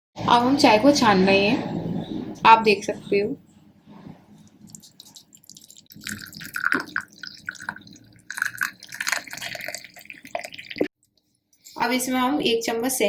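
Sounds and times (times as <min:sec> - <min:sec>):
tea pouring into a cup: 0:04.7 - 0:10.9.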